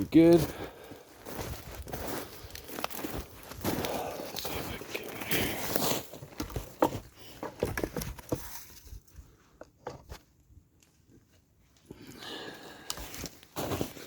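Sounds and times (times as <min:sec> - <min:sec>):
footsteps crunching in snow: 0:00.0 - 0:07.4, 0:13.0 - 0:14.0.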